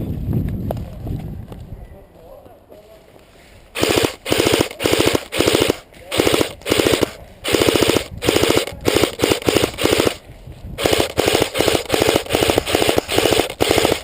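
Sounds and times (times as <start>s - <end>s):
airsoft rifle firing bursts: 3.8s - 10.2s, 10.8s - 14.0s.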